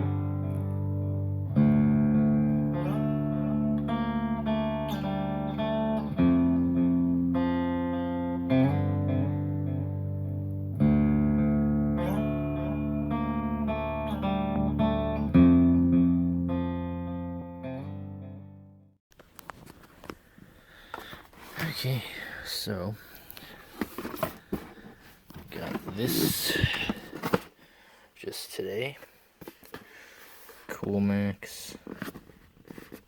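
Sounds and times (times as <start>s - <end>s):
guitar playing slow chords: 0.0s - 19.0s.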